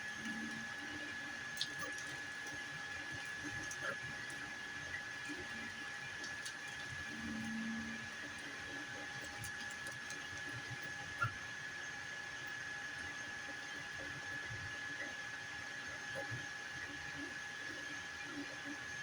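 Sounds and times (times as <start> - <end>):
printer motor whine and hum: 0.0 - 19.0.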